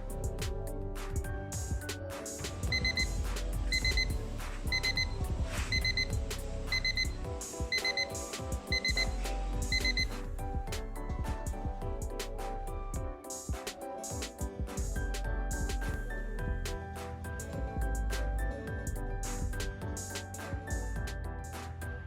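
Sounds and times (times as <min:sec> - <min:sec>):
background music: 0:00.0 - 0:22.0
alarm clock beeping: 0:02.7 - 0:10.1.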